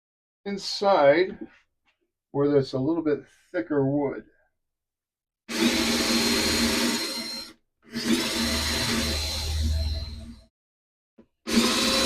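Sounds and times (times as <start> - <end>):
electric drill boring into wood: 5.5 - 10.4, 11.5 - 12.0.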